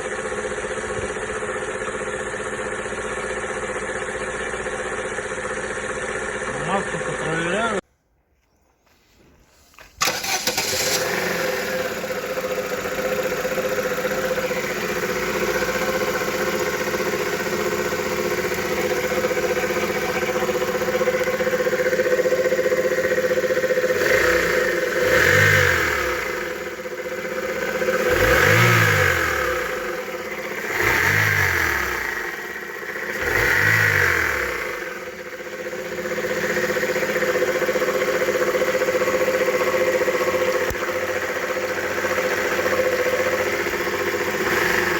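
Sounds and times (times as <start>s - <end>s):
car engine running: 0.0s - 7.8s, 10.0s - 44.9s
engine knocking and rattling: 0.0s - 7.8s, 10.0s - 44.9s
engine revving: 10.0s - 44.9s.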